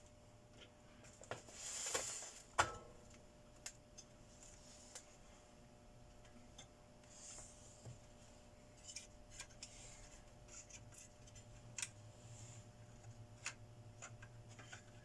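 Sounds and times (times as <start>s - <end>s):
small clicks and rubbing: 8.8s - 12.0s, 12.8s - 15.0s.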